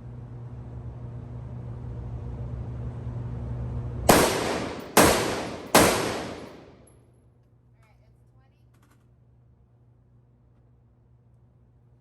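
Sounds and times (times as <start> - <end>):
steady low hum: 0.0 - 6.9
rifle shots echoing: 4.1 - 6.9.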